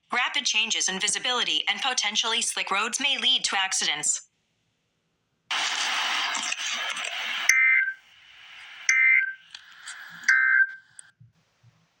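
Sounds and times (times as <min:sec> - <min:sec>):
loud static hiss: 0:05.5 - 0:08.9
two-tone digital data screech: 0:05.5 - 0:11.0.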